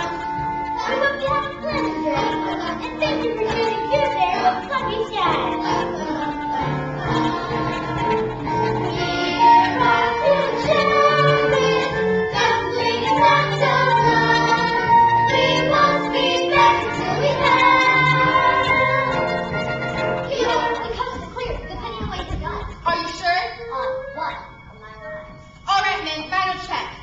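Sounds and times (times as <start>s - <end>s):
ensemble singing: 0.0s - 22.1s
instrumental accompaniment: 0.0s - 27.0s.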